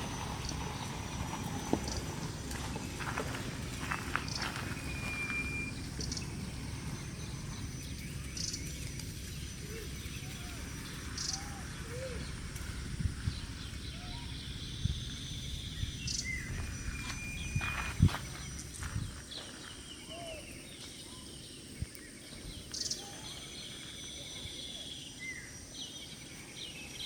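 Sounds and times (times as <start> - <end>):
steady low rumble: 0.0 - 19.3
soft chirping calls: 0.0 - 27.0.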